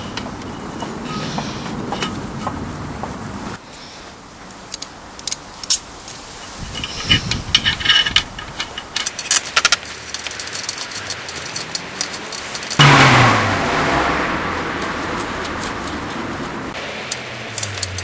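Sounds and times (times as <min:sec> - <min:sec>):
metal tools clinking: 0:06.4 - 0:12.8
loud rushing noise: 0:12.8 - 0:17.5.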